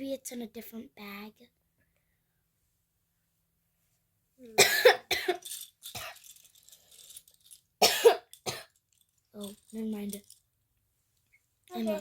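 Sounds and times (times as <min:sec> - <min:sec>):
person coughing: 0:04.6 - 0:05.4, 0:07.8 - 0:08.7.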